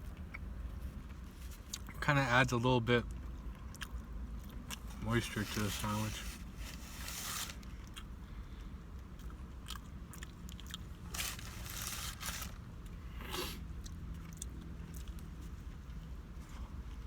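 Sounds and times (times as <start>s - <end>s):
person chewing: 3.3s - 5.0s, 7.6s - 8.2s, 9.1s - 15.3s.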